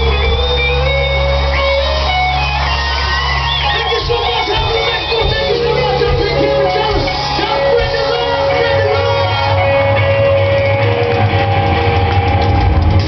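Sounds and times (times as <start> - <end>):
electric guitar long notes: 0.0 - 13.0
live rock band playing: 0.0 - 13.0
steady bass line: 0.0 - 13.0.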